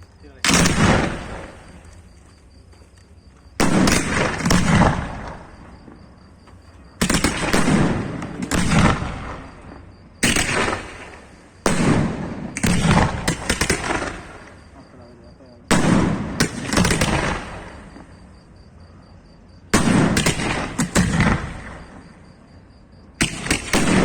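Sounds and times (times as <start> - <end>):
firework shells bursting: 0.0 - 2.0, 3.6 - 5.8, 6.5 - 14.7, 15.7 - 17.8.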